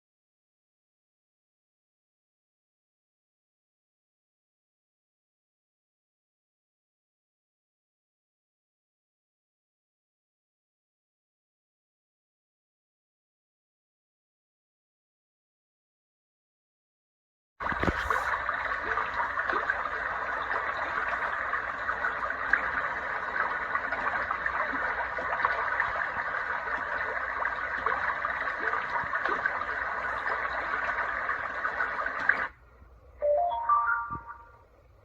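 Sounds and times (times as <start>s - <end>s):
chime of rising notes: 33.2s - 34.5s.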